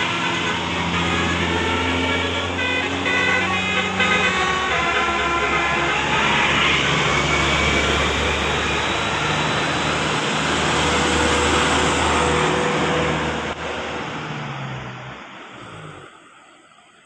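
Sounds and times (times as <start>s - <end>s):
musical bus horn: 0.0s - 9.3s
bus engine low note: 0.0s - 17.0s.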